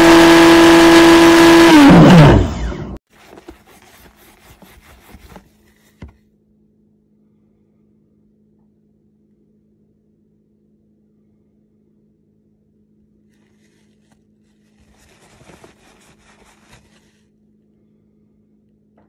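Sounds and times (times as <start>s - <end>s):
coffee maker humming: 0.0s - 2.5s.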